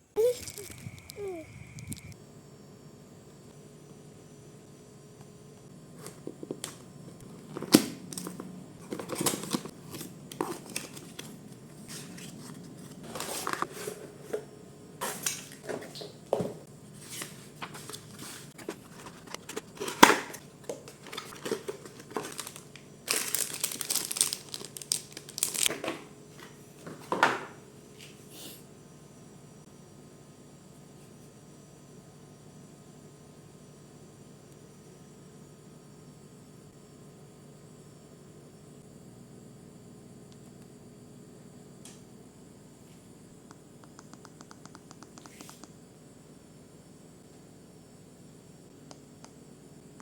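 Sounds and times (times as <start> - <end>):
packaging crinkling and tearing: 20.8 - 25.8.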